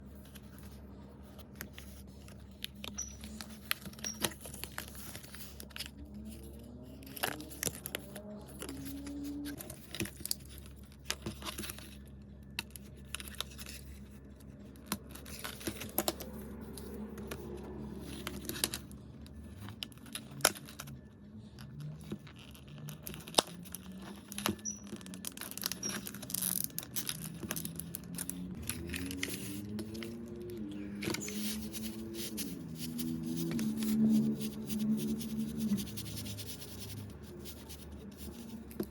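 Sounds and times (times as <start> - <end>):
plastic packaging crinkling and tearing: 22.2 - 30.0.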